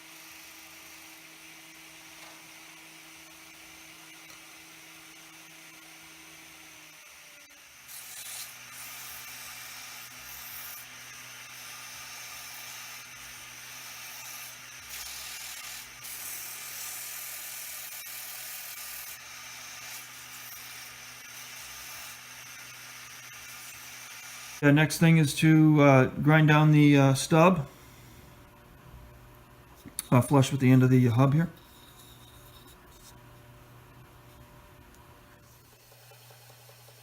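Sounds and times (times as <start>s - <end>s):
wood lathe humming: 0.0s - 25.2s, 35.4s - 37.0s
tool cutting spinning wood: 0.0s - 25.3s, 30.0s - 33.3s, 35.4s - 37.0s.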